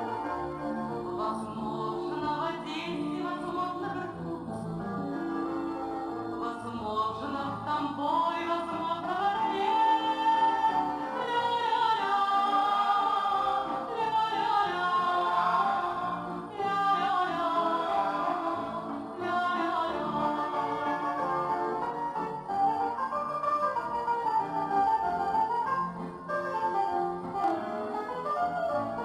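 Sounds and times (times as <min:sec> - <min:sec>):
choir-like wordless singing: 0:00.0 - 0:22.6.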